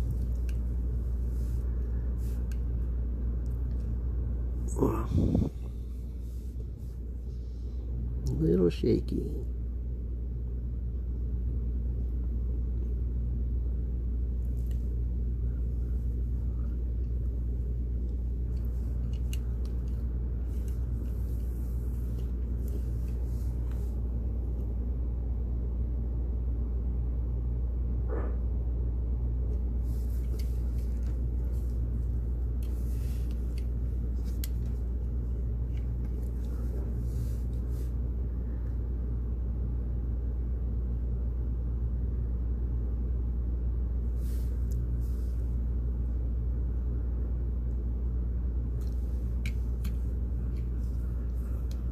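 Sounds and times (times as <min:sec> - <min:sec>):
low background hum: 0:00.0 - 0:51.9.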